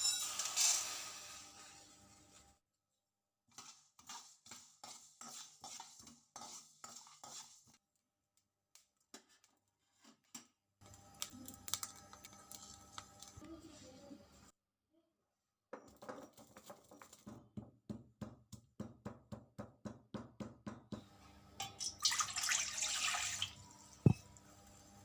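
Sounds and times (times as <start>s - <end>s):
utensils scraping and rattling: 0.0s - 2.4s.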